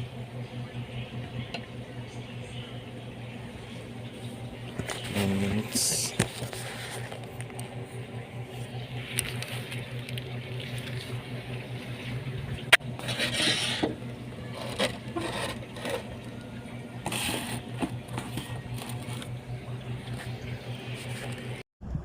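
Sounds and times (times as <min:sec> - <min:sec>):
steady low hum: 0:00.0 - 0:22.0
scraping and rubbing handling: 0:06.1 - 0:07.5, 0:12.9 - 0:16.2, 0:17.0 - 0:19.3.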